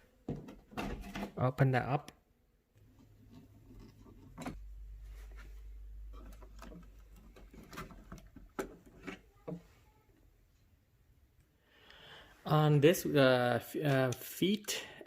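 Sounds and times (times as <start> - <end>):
low steady hum: 2.8 - 9.3.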